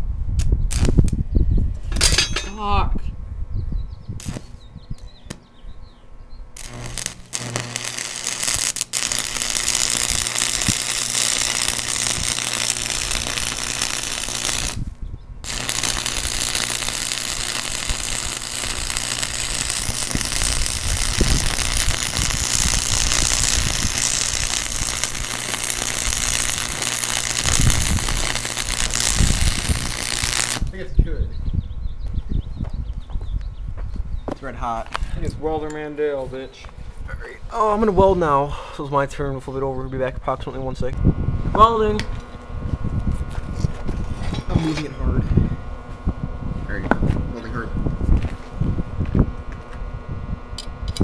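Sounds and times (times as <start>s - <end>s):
welder low hum: 0.0s - 51.0s
welding arc crackling: 0.4s - 1.3s, 4.2s - 5.5s, 6.5s - 30.9s, 40.3s - 51.0s.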